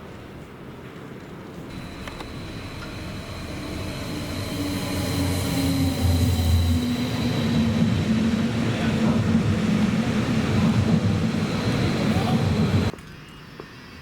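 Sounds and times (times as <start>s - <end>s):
faint high whine: 1.7s - 9.3s
train rumbling past: 1.7s - 13.0s.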